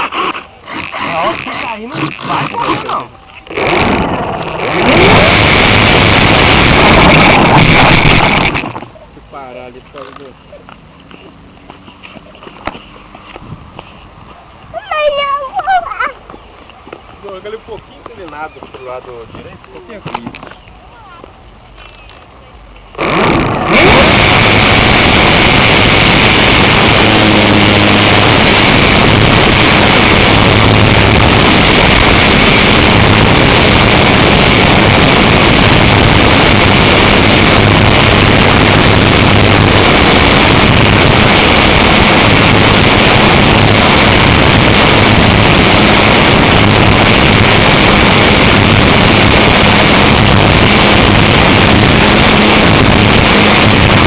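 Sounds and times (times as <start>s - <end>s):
model plane motor whine: 23.0s - 54.0s.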